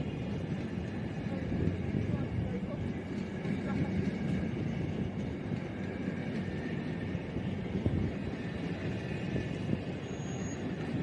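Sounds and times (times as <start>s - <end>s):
low vehicle rumble: 0.0s - 11.0s
faint high whining tones: 4.2s - 11.0s.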